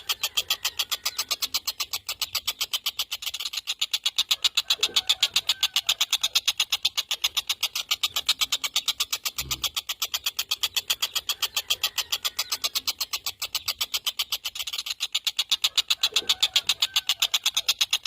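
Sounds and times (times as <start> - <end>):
kingfisher rattling trill: 0.0 - 18.0.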